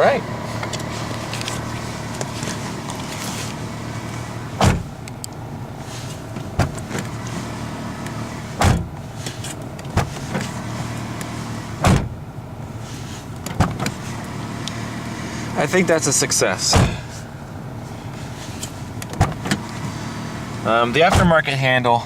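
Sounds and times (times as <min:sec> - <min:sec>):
car door thuds: 0:04.6 - 0:05.0, 0:06.3 - 0:07.2, 0:08.6 - 0:09.0, 0:09.8 - 0:10.5, 0:11.8 - 0:12.2, 0:13.4 - 0:14.0, 0:16.6 - 0:17.1, 0:19.0 - 0:19.7, 0:21.0 - 0:21.4.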